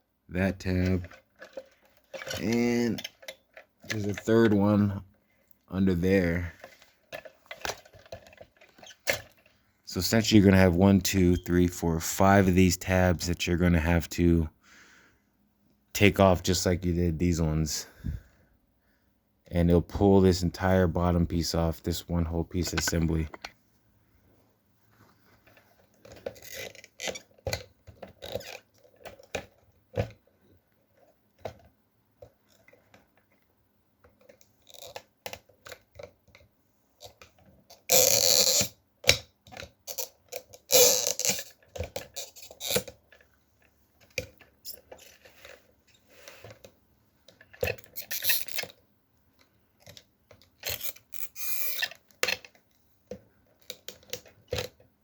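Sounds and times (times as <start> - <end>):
plastic parts clicking: 0.8 - 4.3, 6.5 - 9.6, 25.4 - 30.3, 34.0 - 43.4, 44.0 - 54.9.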